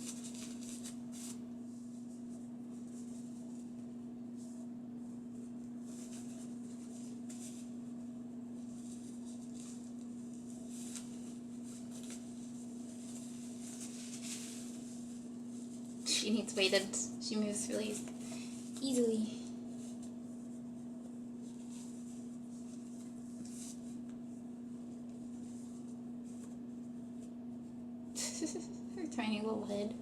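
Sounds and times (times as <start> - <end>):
hands rustling soft items: 0.0 - 16.8
steady low hum: 0.0 - 30.0.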